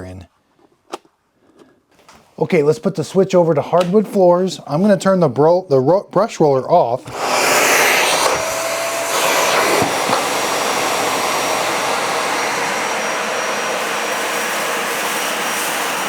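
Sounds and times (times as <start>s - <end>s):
vacuum cleaner running: 7.0s - 16.0s.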